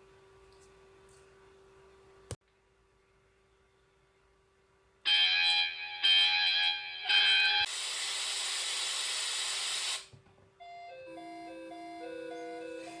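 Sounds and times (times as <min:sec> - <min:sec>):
repeating melody over held tone: 0:05.1 - 0:07.6, 0:10.6 - 0:13.0
static hiss: 0:07.7 - 0:10.1.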